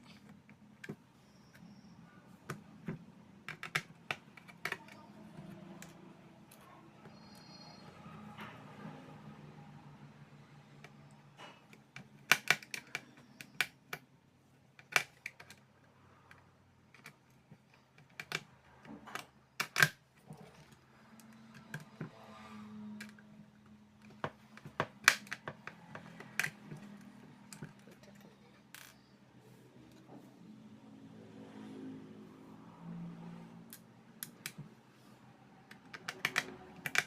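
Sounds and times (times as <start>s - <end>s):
small tools clicking and tapping: 2.5s - 7.6s, 10.8s - 14.0s, 14.8s - 15.6s, 16.3s - 22.2s, 35.7s - 37.0s.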